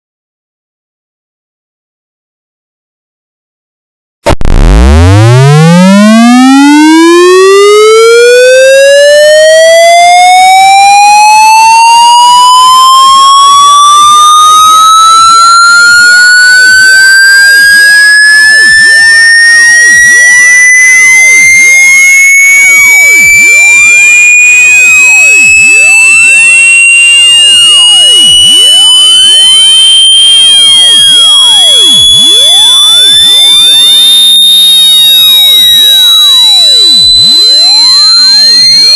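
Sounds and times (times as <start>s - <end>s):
distorted rising electronic tone: 4.3s - 33.8s.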